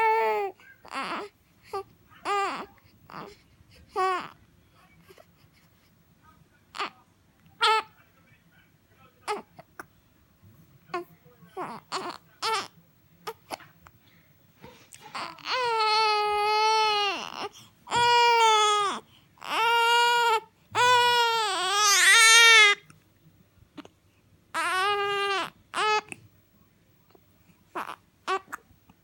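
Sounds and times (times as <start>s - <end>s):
baby crying: 0.0s - 4.4s, 7.6s - 7.9s, 11.6s - 13.6s, 15.0s - 22.8s, 24.6s - 26.2s, 27.8s - 28.6s.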